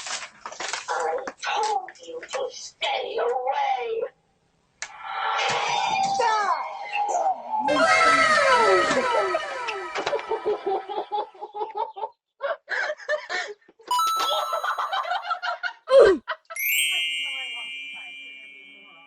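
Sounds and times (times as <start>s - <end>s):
bright bell-like ding: 13.9s - 15.4s, 16.6s - 19.0s
tone sliding steeply downward: 13.9s - 15.4s.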